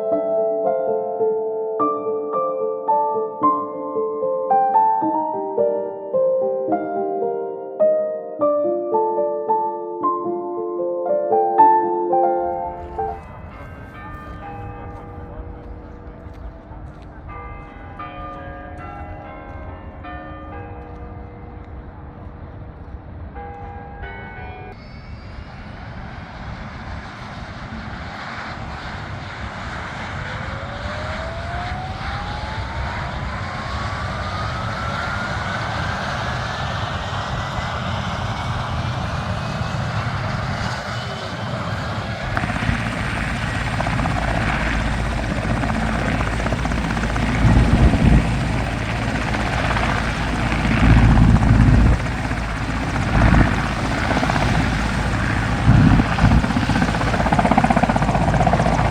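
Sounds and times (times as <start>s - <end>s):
helicopter engine and rotor: 33.9s - 58.9s
rising whine: 39.9s - 58.9s
heavy low rumbling gusts: 41.6s - 58.9s.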